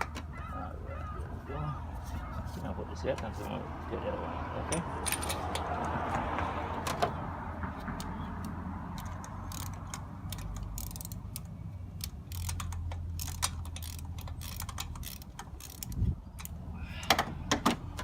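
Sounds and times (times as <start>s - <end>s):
ratchet wrench clicking: 8.0s - 16.6s.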